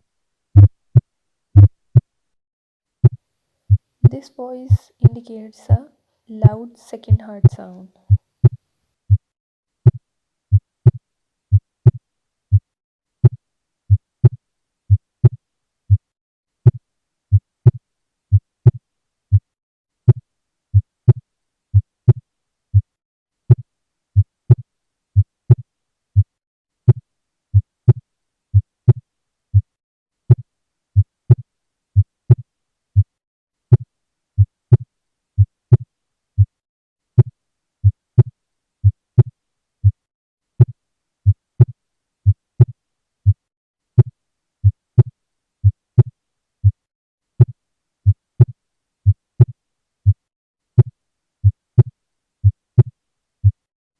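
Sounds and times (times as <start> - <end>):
heartbeat lub-dub thuds: 0.6 - 1.0, 1.6 - 2.1, 3.0 - 4.2, 6.3 - 10.0, 10.8 - 16.8, 17.6 - 20.2, 20.8 - 21.2, 21.8 - 22.2, 27.6 - 28.0, 28.6 - 29.0, 38.2 - 40.0, 46.0 - 47.5, 50.1 - 50.9, 52.8 - 53.7.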